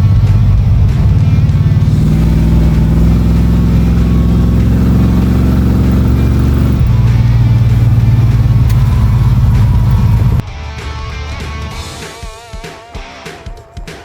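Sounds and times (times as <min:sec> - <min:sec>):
car engine running: 0:00.0 - 0:10.4.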